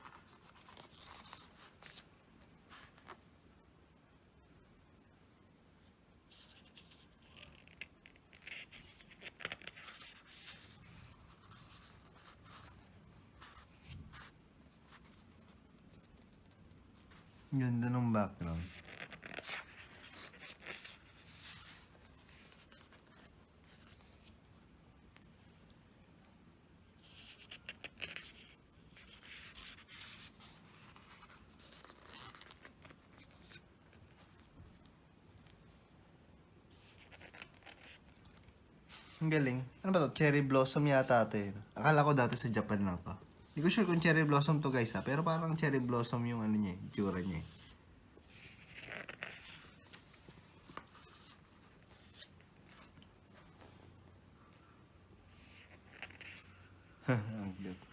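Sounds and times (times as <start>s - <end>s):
pages turning: 30.8s - 35.6s
album pages rustling: 39.2s - 47.8s.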